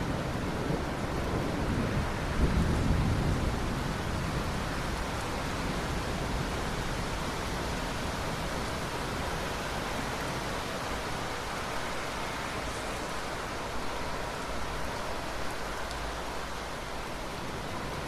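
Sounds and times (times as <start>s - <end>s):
low thunder rumble: 0.0s - 8.1s
steady rain hiss: 0.0s - 18.0s.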